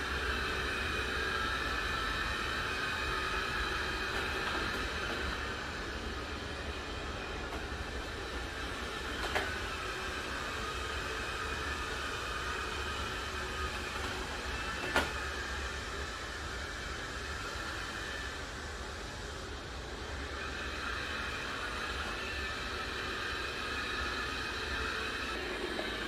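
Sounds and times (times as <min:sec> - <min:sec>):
robot vacuum motor whine: 0:20.2 - 0:26.0.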